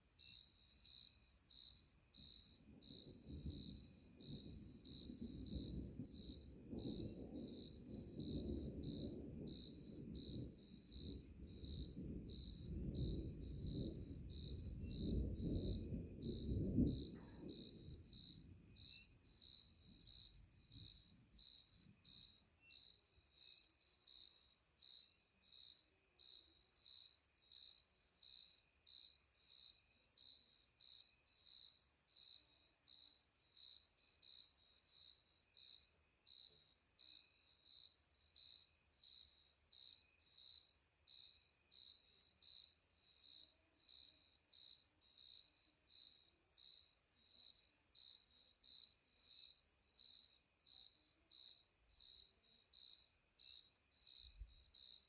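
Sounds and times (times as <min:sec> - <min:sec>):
crickets chirping: 0:00.0 - 0:55.0
distant thunder rumble: 0:02.7 - 0:21.1.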